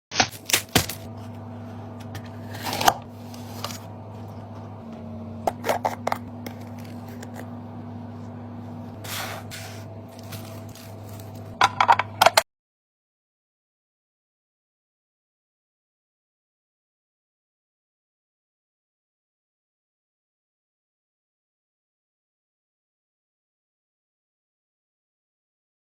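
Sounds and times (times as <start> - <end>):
low hum: 0.1 - 12.4
containers set down: 5.4 - 7.5, 9.0 - 12.4.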